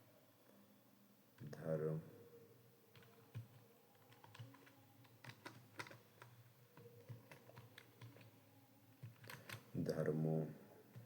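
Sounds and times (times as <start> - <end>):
keyboard typing: 2.9 - 9.8.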